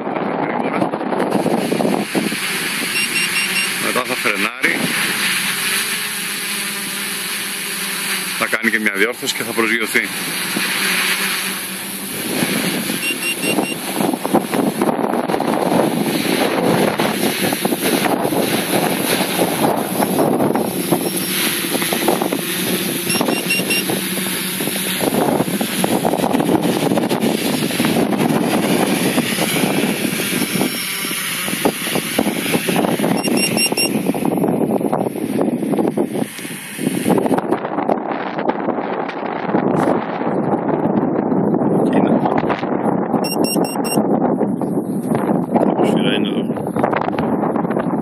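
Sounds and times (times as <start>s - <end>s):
drone propellers whirring: 0.0s - 48.0s
wind buffeting microphone: 0.0s - 48.0s
faint high beeps: 3.0s - 3.8s, 13.0s - 13.8s, 23.1s - 23.9s, 33.2s - 34.0s, 43.2s - 44.0s.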